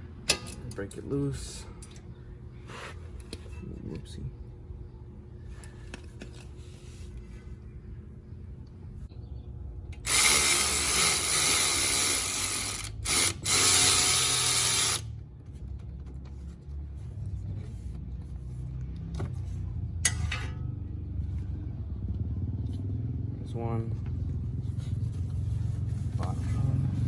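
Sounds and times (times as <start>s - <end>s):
power tool spinning out bolt: 10.0s - 15.1s.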